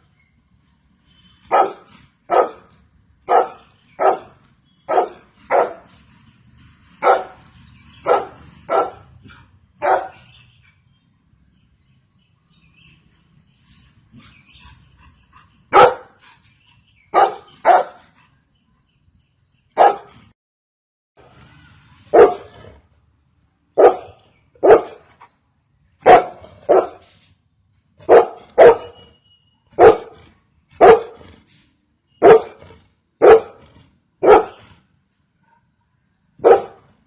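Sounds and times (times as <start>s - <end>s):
dog barking: 1.5s - 2.7s, 3.3s - 5.9s, 7.0s - 7.4s, 8.0s - 9.1s, 9.8s - 10.3s, 15.7s - 16.1s, 17.1s - 18.0s, 19.8s - 20.2s, 22.1s - 22.7s, 23.8s - 25.1s, 26.0s - 27.0s, 28.0s - 29.1s, 29.7s - 30.2s, 30.8s - 31.2s, 32.2s - 33.6s, 34.2s - 34.7s, 36.4s - 36.9s.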